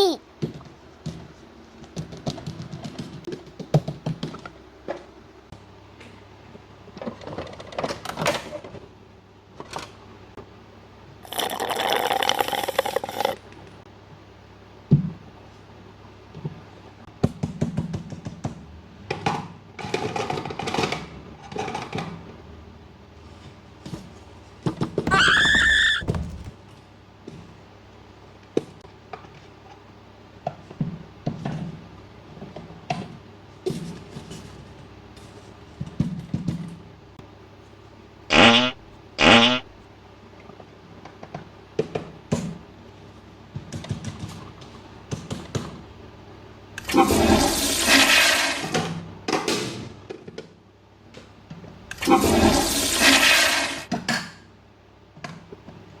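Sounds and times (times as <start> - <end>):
toy toilet flush: 11.2 - 13.5, 46.8 - 49.0, 51.9 - 53.9.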